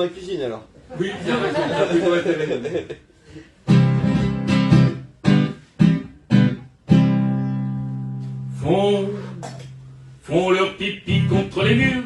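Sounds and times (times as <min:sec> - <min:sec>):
acoustic guitar strumming chords: 0:03.7 - 0:12.0.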